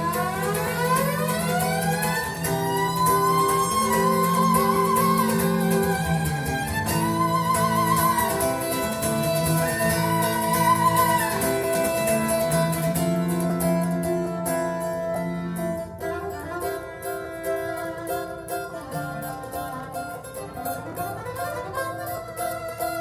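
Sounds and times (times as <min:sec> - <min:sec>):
string music over loudspeakers: 0:00.0 - 0:23.0.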